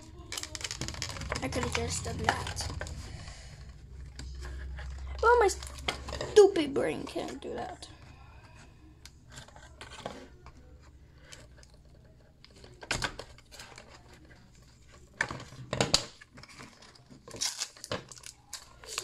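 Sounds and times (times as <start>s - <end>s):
packaging tearing and crinkling: 0.0s - 2.9s, 15.9s - 19.0s.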